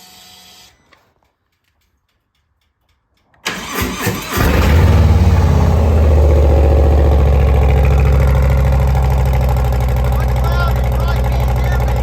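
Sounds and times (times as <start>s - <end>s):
motorcycle engine cranking: 3.3s - 6.0s
motorcycle engine idling loudly: 4.4s - 12.0s.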